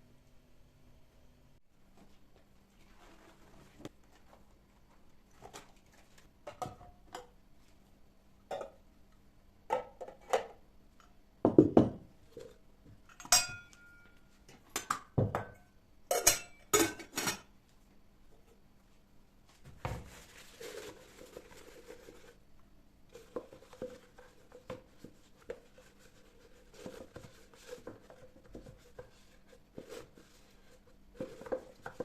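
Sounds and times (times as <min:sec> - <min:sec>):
dishes and cutlery clinking: 0:13.2 - 0:17.5.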